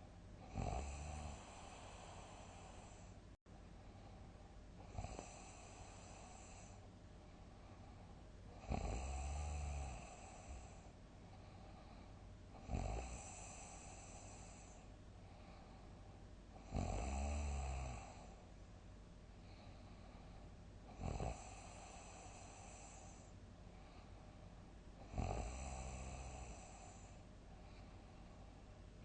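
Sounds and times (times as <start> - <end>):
person snoring loudly: 0.5 - 3.1, 8.6 - 10.8, 12.6 - 14.8, 16.6 - 18.3, 21.0 - 23.2, 25.1 - 27.1.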